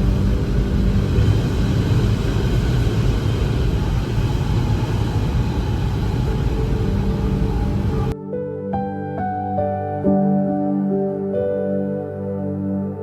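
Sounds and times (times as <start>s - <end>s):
low rumble: 0.0s - 8.2s
rushing noise: 0.0s - 8.2s.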